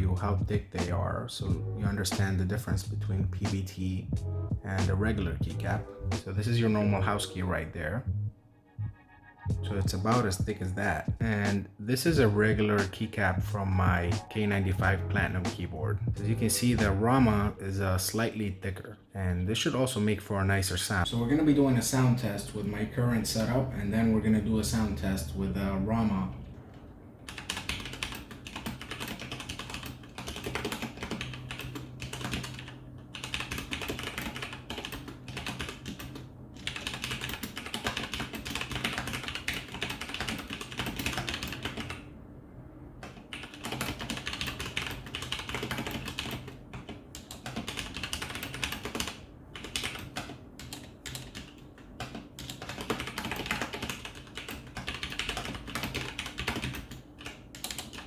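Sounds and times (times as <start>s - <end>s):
mechanical keyboard typing: 27.3s - 42.0s, 43.0s - 58.0s.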